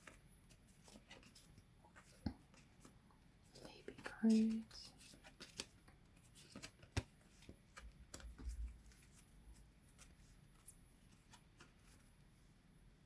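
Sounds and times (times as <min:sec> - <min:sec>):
photo cards clicking and rustling: 0:03.8 - 0:12.0.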